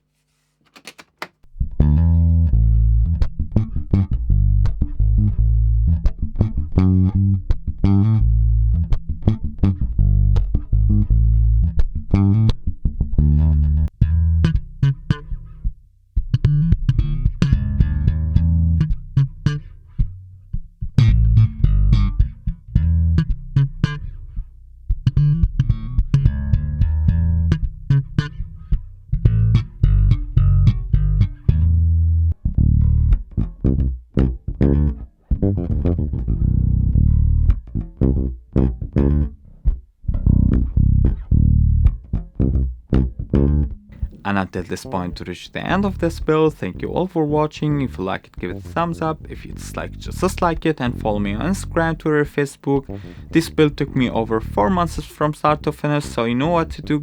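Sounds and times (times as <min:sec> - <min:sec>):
clicks: 0:00.5 - 0:01.4
plucked electric bass guitar: 0:01.5 - 0:57.0.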